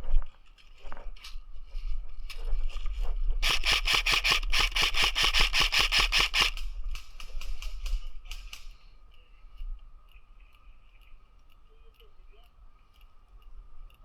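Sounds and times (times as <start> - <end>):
airsoft rifle rapid shots: 3.4 - 6.7.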